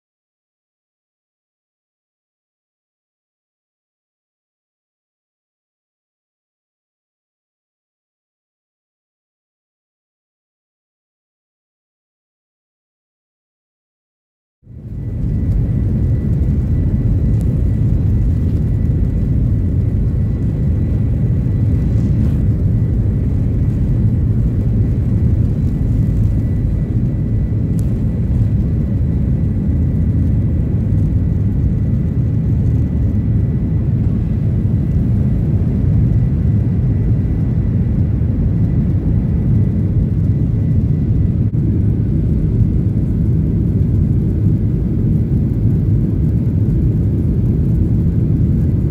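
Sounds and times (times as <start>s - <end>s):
jet airliner cabin rumble: 14.7s - 48.9s.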